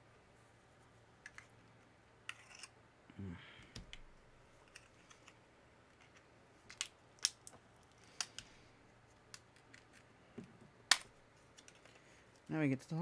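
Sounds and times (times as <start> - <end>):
low vocal grunt: 3.2 - 3.6
plastic casing snapping: 6.7 - 8.5, 10.9 - 11.7.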